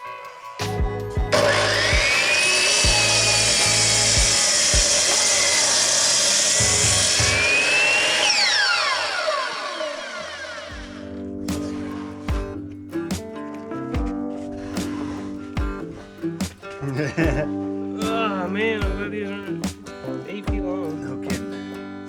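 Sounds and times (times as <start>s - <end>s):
power saw cutting wood: 1.4s - 11.0s, 11.6s - 12.3s.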